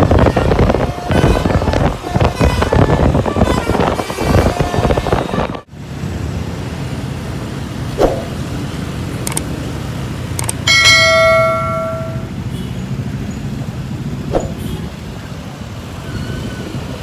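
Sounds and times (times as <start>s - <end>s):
bus horn melodic notes: 0.0s - 5.6s, 10.7s - 12.3s
engine and road noise: 0.0s - 17.0s.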